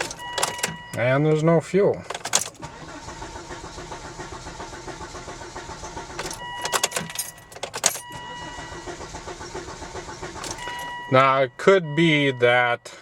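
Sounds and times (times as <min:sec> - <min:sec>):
key clicks and rattles: 0:00.0 - 0:02.7, 0:06.1 - 0:08.2, 0:10.4 - 0:11.3
car engine cranking: 0:00.0 - 0:11.4.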